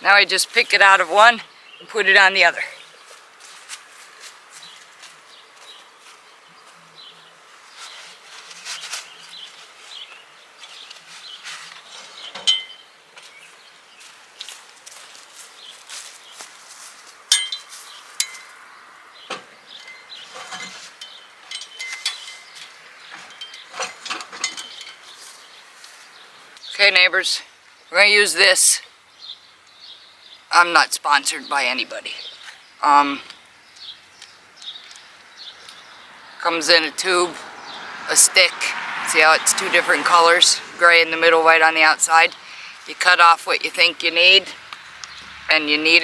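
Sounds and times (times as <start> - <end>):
metal rack clinking and knocking: 11.9 - 12.8, 17.3 - 18.6, 19.3 - 25.2
ringing metal clanks: 12.4 - 12.8, 17.3 - 18.6, 19.3 - 25.1.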